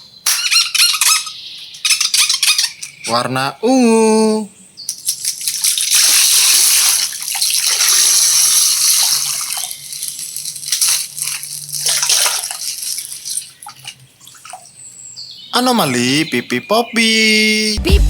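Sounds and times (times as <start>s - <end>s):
water pouring and splashing: 4.9s - 14.8s.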